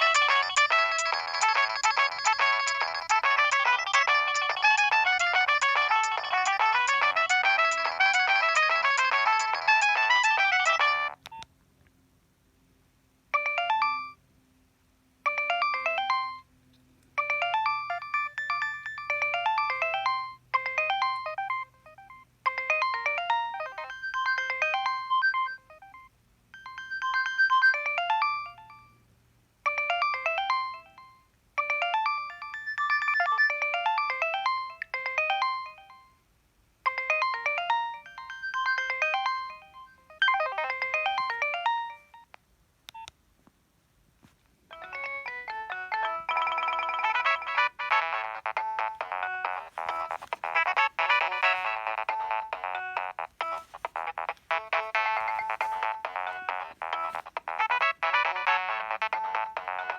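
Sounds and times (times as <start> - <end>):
mobile phone ringtone: 0.0 - 11.4, 13.4 - 14.2, 15.3 - 16.5, 17.2 - 36.2, 36.8 - 42.4, 44.7 - 59.9.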